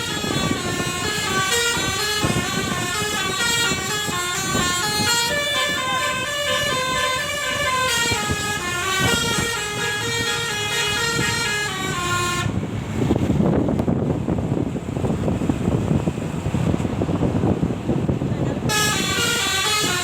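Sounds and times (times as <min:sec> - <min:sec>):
musical air horn melody: 0:00.0 - 0:12.6, 0:18.7 - 0:20.0.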